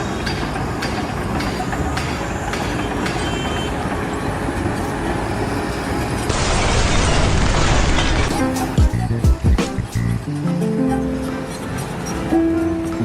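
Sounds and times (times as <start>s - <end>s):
loud hiss-like noise: 6.3s - 8.8s
heavy mechanical rumble: 6.3s - 9.3s.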